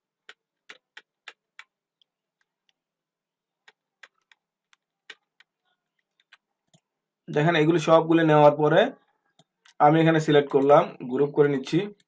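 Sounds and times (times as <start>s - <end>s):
computer mouse clicks: 3.6s - 6.9s, 9.3s - 9.8s.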